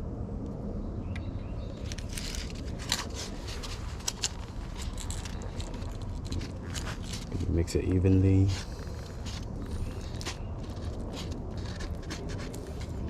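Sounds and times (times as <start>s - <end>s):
steady low rumble: 0.0s - 13.0s
tool scraping putty: 8.5s - 13.0s.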